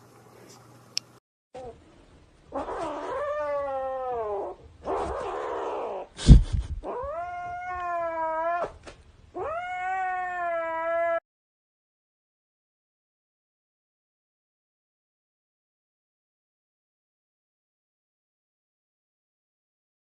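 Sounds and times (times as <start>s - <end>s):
cat yowling: 2.5s - 6.1s, 6.8s - 8.8s, 9.4s - 11.2s.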